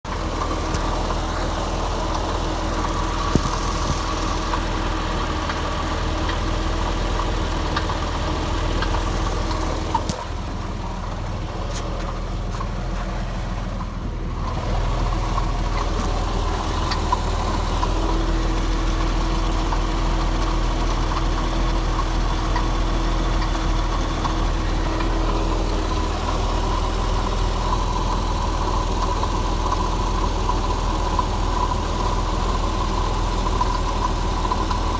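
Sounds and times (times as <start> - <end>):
car engine idling with rattle: 0.0 - 34.9.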